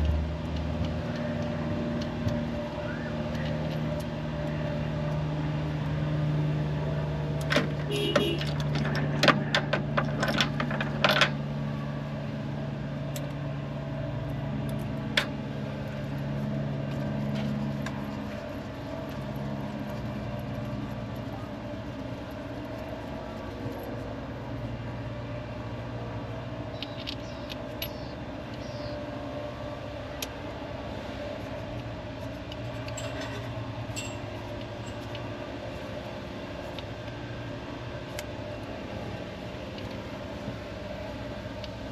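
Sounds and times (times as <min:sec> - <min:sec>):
low mechanical hum: 0:00.0 - 0:41.9
metal tools clinking: 0:32.6 - 0:35.2.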